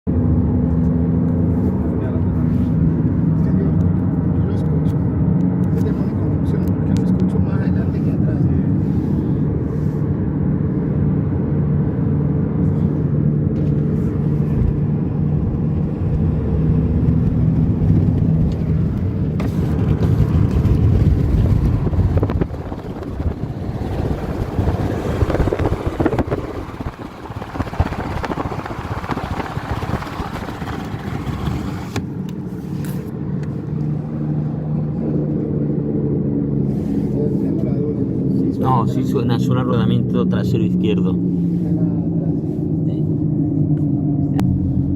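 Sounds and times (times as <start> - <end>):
tyre and road noise: 0.1 - 44.9
wheel bearing droning hum: 8.0 - 38.5.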